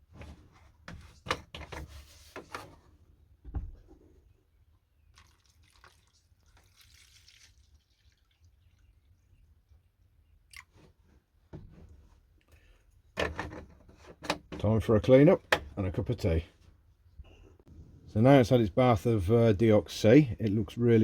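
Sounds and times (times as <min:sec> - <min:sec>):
liquid dripping and splashing: 0:05.1 - 0:09.0.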